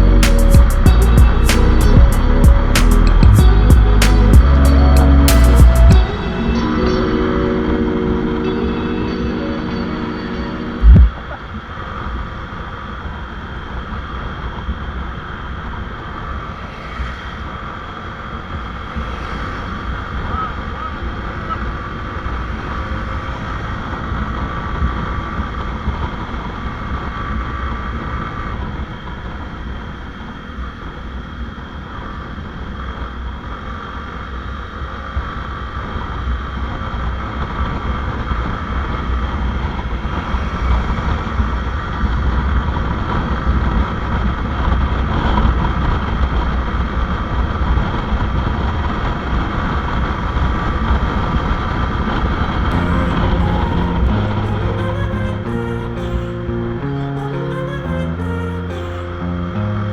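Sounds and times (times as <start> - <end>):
wind rushing over microphone: 10.8 - 28.8, 37.0 - 56.6.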